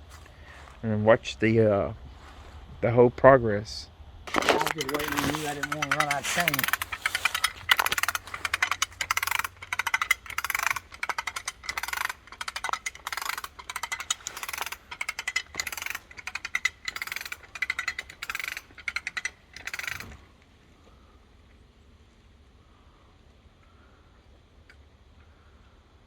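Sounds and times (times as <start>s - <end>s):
hand ratchet clicking: 4.3s - 20.3s.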